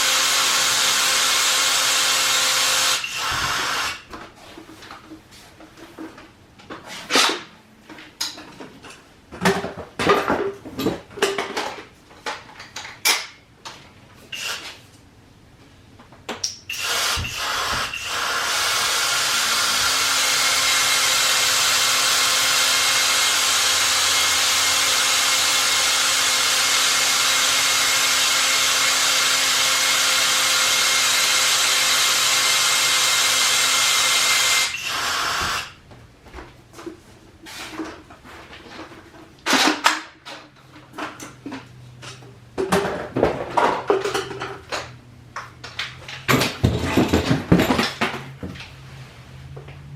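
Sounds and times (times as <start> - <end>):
caulking gun motor whining: 16.7 - 35.8.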